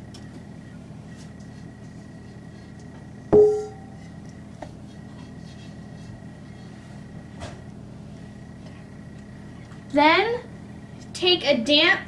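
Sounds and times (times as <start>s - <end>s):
steady low hum: 0.0s - 12.0s
bowl knock ringing: 3.3s - 3.9s.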